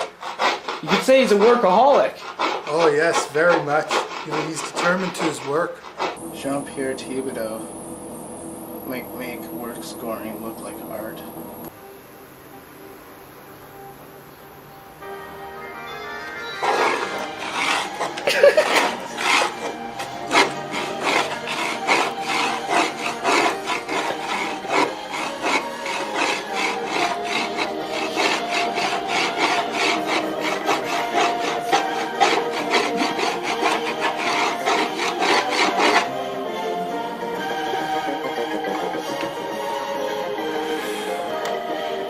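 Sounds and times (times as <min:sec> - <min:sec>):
hand tool scraping wooden board: 0:00.0 - 0:07.7, 0:16.6 - 0:36.4.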